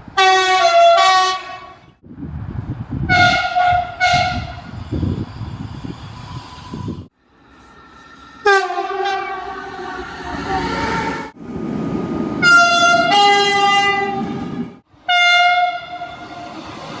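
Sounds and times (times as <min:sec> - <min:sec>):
moving train rumble: 0:00.0 - 0:17.0
train horn blasts: 0:00.2 - 0:01.9, 0:03.1 - 0:04.6, 0:08.4 - 0:10.0, 0:12.4 - 0:14.5, 0:15.1 - 0:16.5.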